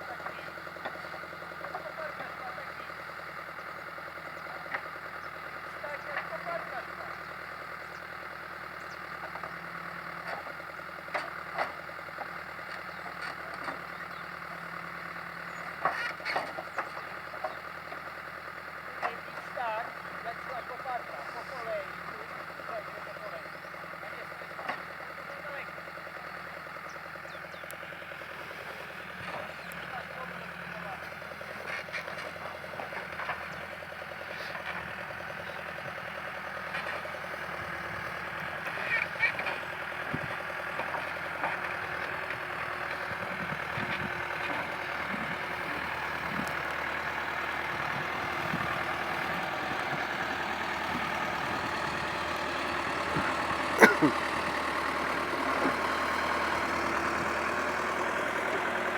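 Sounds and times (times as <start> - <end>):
diesel engine running at low revs: 0.0 - 58.9.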